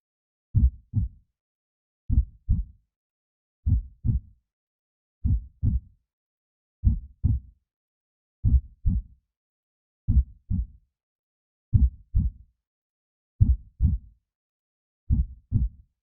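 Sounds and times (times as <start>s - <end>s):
heartbeat thumps: 0.6s - 1.1s.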